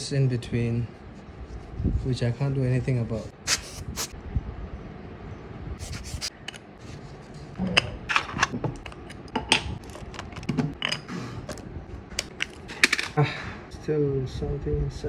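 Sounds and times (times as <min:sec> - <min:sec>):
lens parts clicking and knocking: 0:12.2 - 0:13.2.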